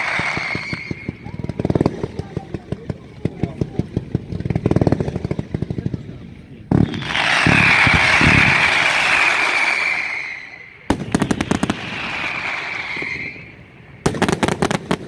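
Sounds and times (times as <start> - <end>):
firework whistle: 0.0 - 1.6, 6.7 - 15.0
firecracker bangs: 6.7 - 15.0.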